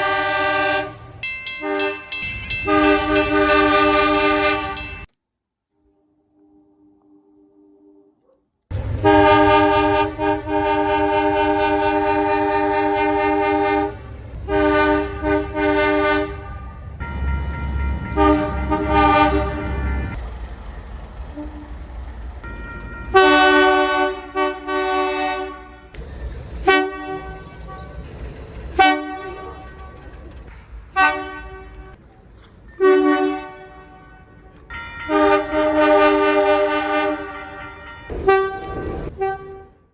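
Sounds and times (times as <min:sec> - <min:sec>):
locomotive chime whistle: 0:00.0 - 0:05.1, 0:17.0 - 0:20.2, 0:21.3 - 0:32.0, 0:32.7 - 0:39.1
train horn chord: 0:00.0 - 0:05.1, 0:08.8 - 0:20.2, 0:21.3 - 0:21.8, 0:22.4 - 0:30.4, 0:31.0 - 0:32.0, 0:32.8 - 0:39.9
low engine rumble: 0:08.7 - 0:35.8.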